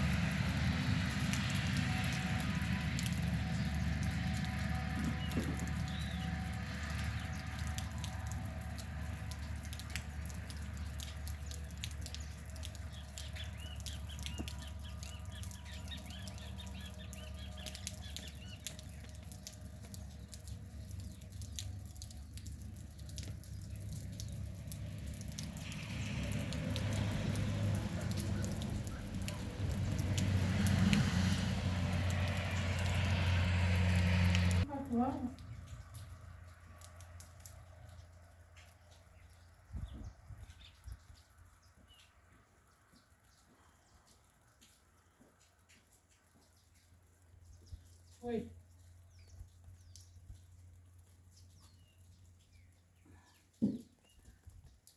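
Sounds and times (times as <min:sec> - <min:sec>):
rain pattering and dripping: 0:00.0 - 0:54.9
bird chirping: 0:10.8 - 0:19.4.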